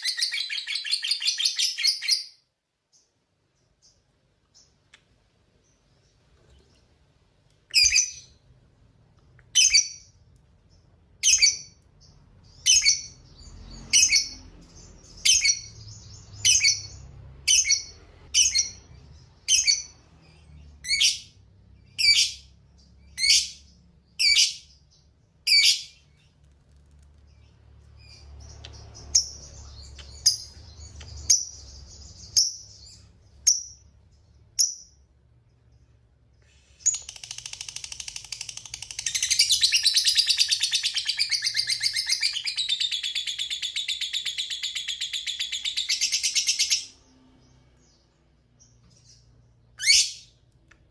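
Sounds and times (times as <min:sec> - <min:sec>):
high bird chattering: 0:36.8 - 0:46.9
lovebird calling: 0:36.8 - 0:47.0.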